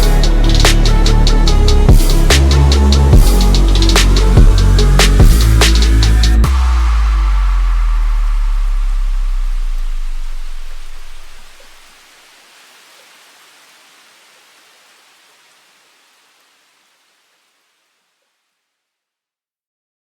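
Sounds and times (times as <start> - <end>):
deep electronic bass note: 0.0 - 11.8
hiss of noise: 0.0 - 18.3.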